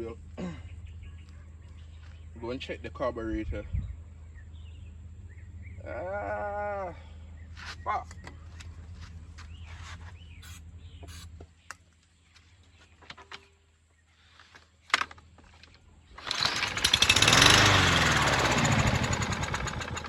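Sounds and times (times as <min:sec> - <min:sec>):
lawn mower engine running: 0:10.4 - 0:11.3, 0:15.0 - 0:20.0.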